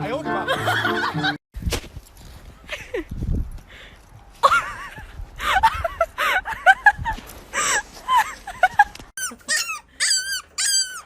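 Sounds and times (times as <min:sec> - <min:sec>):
puppies whimpering and squealing: 0:09.2 - 0:11.0.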